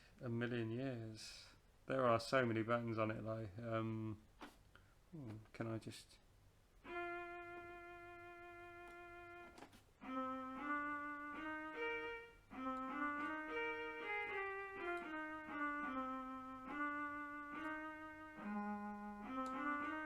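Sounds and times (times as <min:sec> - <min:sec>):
electronic keyboard melody: 0:06.8 - 0:20.0.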